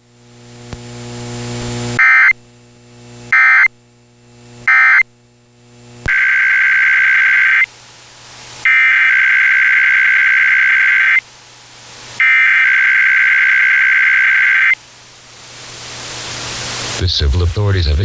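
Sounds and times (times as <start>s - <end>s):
low hum with hiss: 0.0s - 18.0s
digital data burst screeches: 6.1s - 7.7s.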